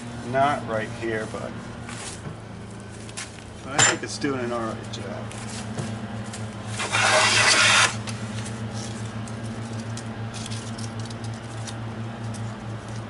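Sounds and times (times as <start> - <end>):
plane shearing a shaving: 6.7 - 13.0
knocks and scrapes of plane: 6.8 - 8.0.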